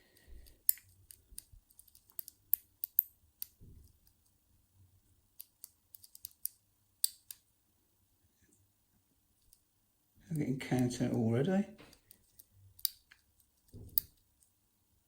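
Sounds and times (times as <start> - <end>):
lock pick clicking in padlock: 0.6 - 3.6, 5.4 - 7.4, 11.9 - 14.3.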